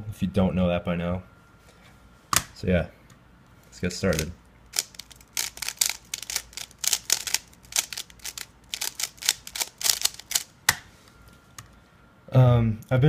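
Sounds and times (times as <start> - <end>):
puzzle cube plastic clacking: 4.1 - 10.5.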